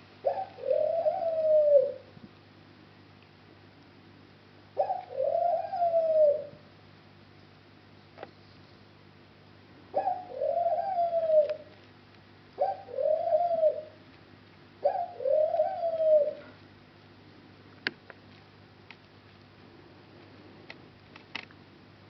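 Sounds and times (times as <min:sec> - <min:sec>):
bird cooing: 0:00.2 - 0:02.1, 0:04.8 - 0:06.6, 0:09.9 - 0:11.8, 0:12.6 - 0:14.0, 0:14.8 - 0:16.6.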